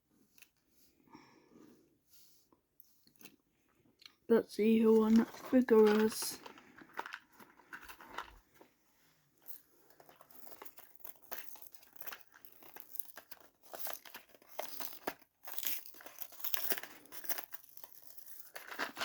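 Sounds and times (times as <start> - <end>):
packaging crinkling and tearing: 9.9 - 19.0.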